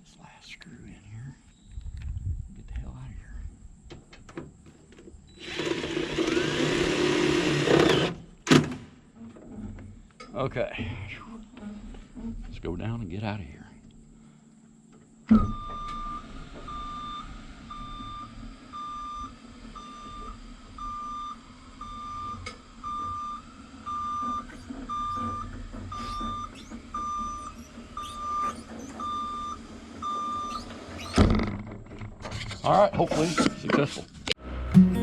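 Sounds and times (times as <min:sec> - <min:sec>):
low hum of hydraulics: 0:03.4 - 0:34.1
motion alarm beeping: 0:15.4 - 0:31.2.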